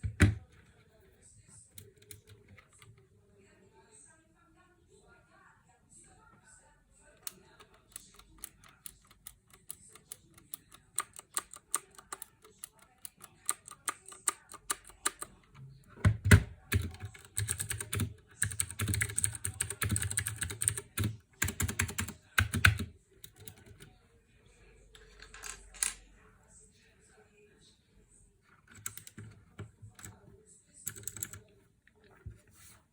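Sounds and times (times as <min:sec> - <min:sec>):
clicky mechanical keyboard typing: 0:07.2 - 0:15.4, 0:16.0 - 0:23.9, 0:28.7 - 0:30.2, 0:30.8 - 0:31.5.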